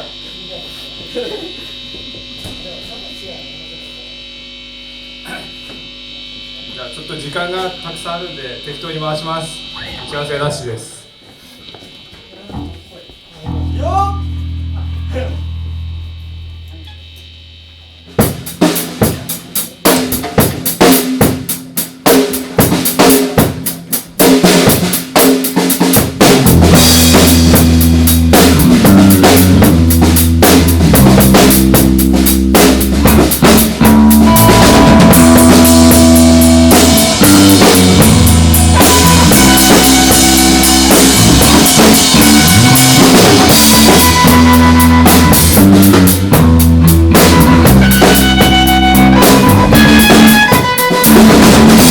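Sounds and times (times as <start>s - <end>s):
rock band playing loudly: 13.4s - 16.7s, 18.0s - 51.9s
drum kit playing: 13.4s - 51.9s.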